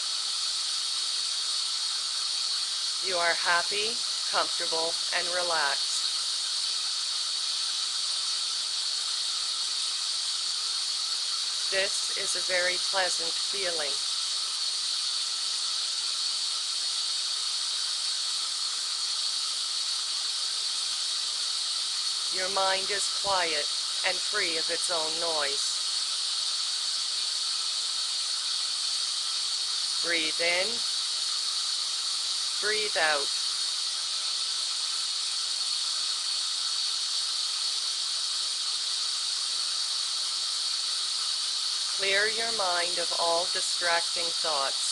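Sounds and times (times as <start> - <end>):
white noise hiss: 0.0 - 44.9.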